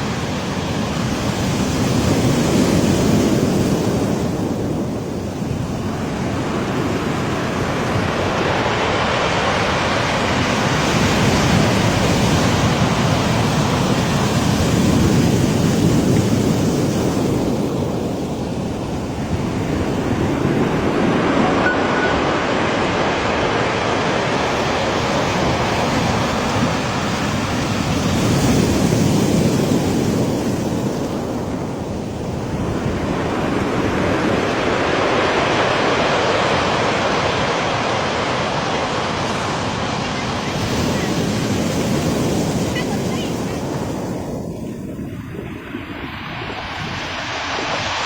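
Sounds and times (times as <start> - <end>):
waves washing on pebble beach: 0.0 - 44.8.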